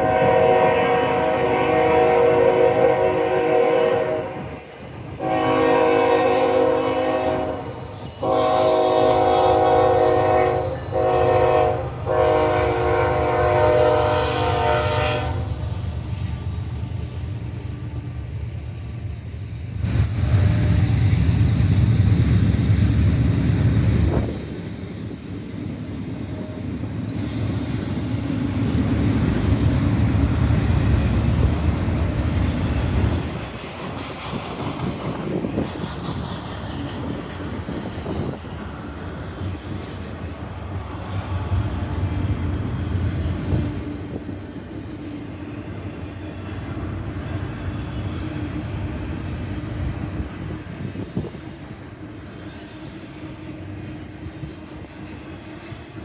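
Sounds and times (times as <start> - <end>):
locomotive horn blasts: 0.0 - 4.6, 5.2 - 15.6
diesel locomotives rumbling past: 0.0 - 56.0
train cars rolling: 5.2 - 56.0.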